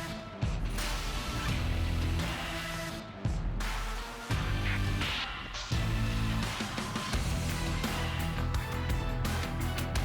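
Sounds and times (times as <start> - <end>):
guitar-driven rock music: 7.1 - 10.0.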